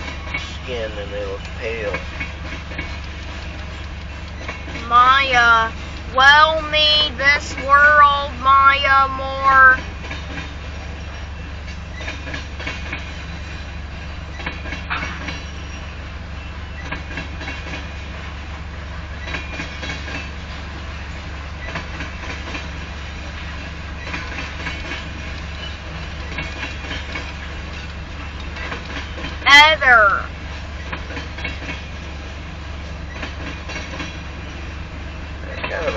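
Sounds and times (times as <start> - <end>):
train wheels rumbling on rail: 0.0 - 35.9
wheel clicks over rail joints: 1.4 - 5.1, 19.1 - 20.5, 21.6 - 29.5, 30.8 - 32.0.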